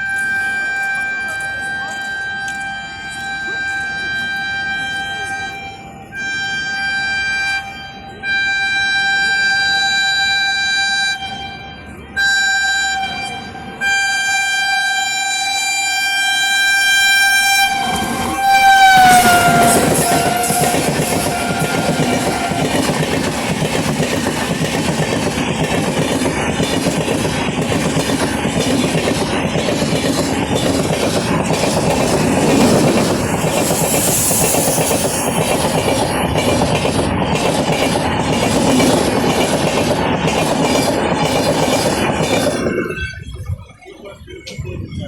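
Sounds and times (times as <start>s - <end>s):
shrill locomotive horn: 0.0s - 23.4s
train coaches rumbling past: 0.0s - 45.0s
wheel clacks over rail joints: 17.7s - 43.0s.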